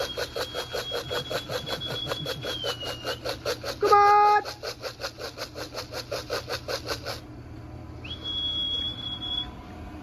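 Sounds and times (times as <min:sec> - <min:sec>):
person whistling high: 0:00.0 - 0:03.2, 0:08.0 - 0:09.6
feed rattling in a can: 0:00.0 - 0:07.2.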